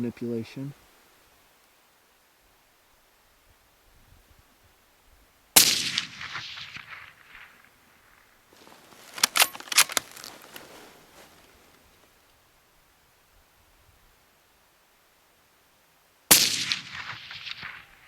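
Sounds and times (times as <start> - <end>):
suppressed rifle shot echoing: 5.6 - 7.6, 16.3 - 18.0
rifle bolt metallic clicks: 9.0 - 10.3.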